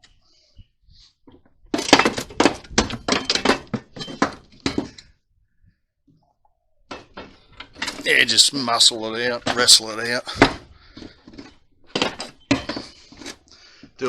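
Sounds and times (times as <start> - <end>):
metal clanking and knocking: 1.3 - 5.1, 6.9 - 13.4.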